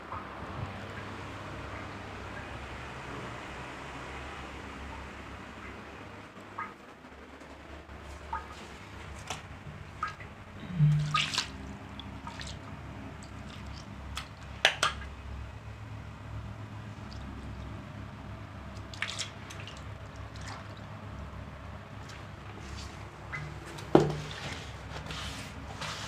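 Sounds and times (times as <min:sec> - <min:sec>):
water running and dripping: 0:08.1 - 0:15.7, 0:16.4 - 0:25.1.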